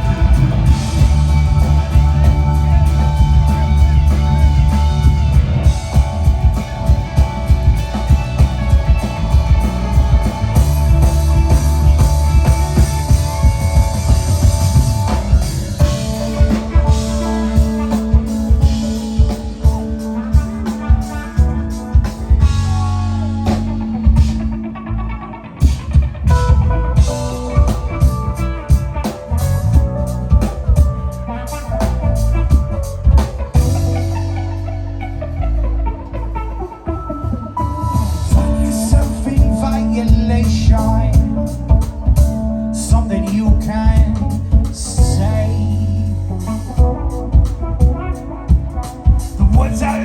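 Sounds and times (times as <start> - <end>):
drum beat: 0.0 - 23.0
bass guitar: 0.0 - 50.0
guitar: 0.0 - 50.0.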